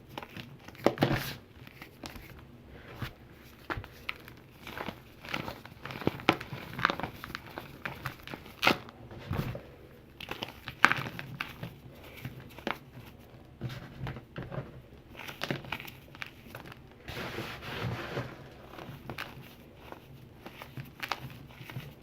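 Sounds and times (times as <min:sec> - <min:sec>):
crunching and crackling of crushed mineral: 0:00.0 - 0:22.0
gritty rubbing: 0:17.0 - 0:20.6.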